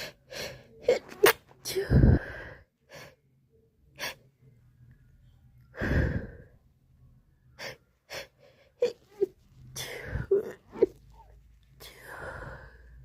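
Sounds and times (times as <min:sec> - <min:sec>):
woman sneezing: 0:00.9 - 0:02.1.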